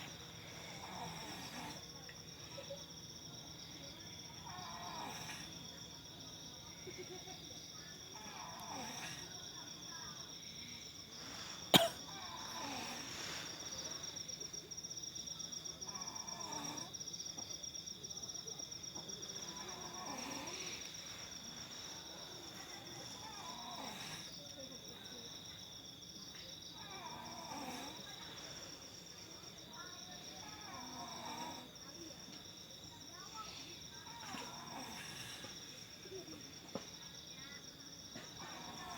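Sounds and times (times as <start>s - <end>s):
crickets trilling: 0.0s - 38.9s
person snoring: 19.8s - 20.9s.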